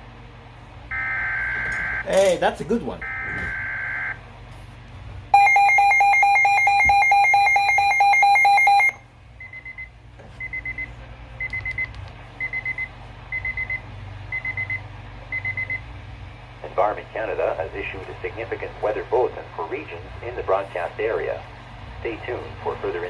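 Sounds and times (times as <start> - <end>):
short high beeps: 5.4 - 9.7.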